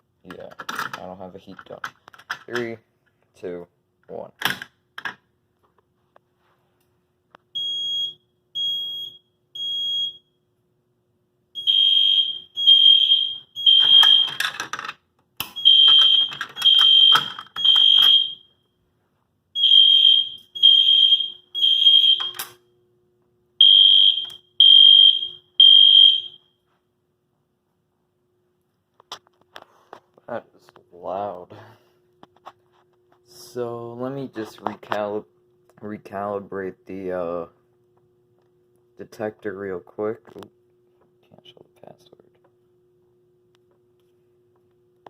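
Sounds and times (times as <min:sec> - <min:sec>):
fire alarm beeping: 0:07.5 - 0:10.5, 0:11.5 - 0:14.5, 0:15.5 - 0:18.9, 0:19.6 - 0:22.7, 0:23.6 - 0:26.7.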